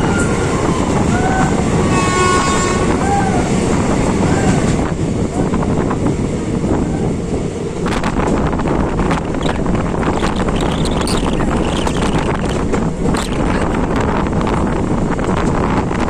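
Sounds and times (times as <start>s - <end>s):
train horn: 0.0s - 3.6s
train rumbling: 0.0s - 16.0s
sharp clicks: 9.4s - 13.9s.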